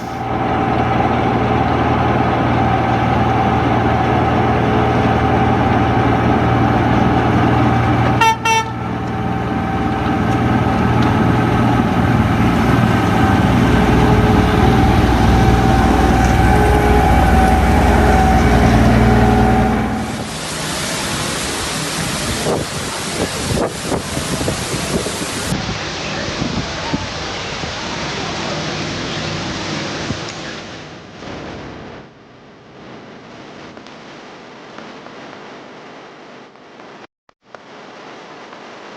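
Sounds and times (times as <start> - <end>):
train horn toot: 0.0 - 0.3, 8.2 - 9.0, 13.7 - 20.4
train running: 0.0 - 31.0.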